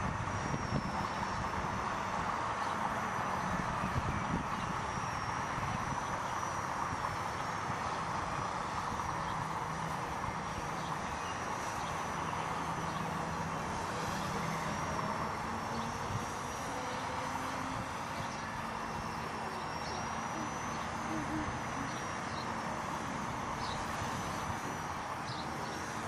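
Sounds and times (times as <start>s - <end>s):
wind rumble on microphone: 0.0s - 2.6s, 3.4s - 6.2s
rc helicopter motor whine: 0.0s - 26.0s.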